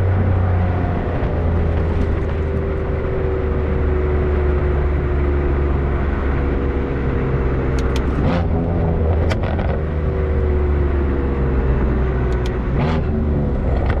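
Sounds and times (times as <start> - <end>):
car exhaust deep drone: 0.0 - 14.0
sharp clicks: 7.7 - 8.2, 12.3 - 12.6.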